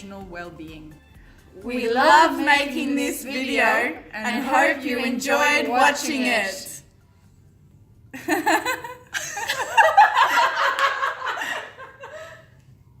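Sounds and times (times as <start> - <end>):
people laughing and chuckling: 8.2 - 12.6.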